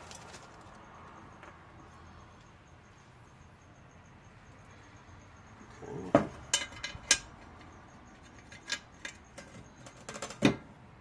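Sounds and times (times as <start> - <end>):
small metal parts clinking: 0.0 - 1.6, 6.4 - 10.4.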